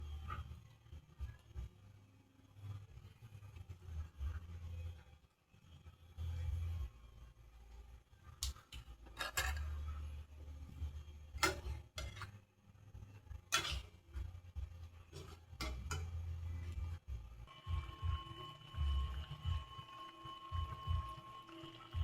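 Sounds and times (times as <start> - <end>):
dishes and cutlery clinking: 9.1 - 9.9, 11.4 - 12.4, 13.5 - 14.0, 15.1 - 16.3.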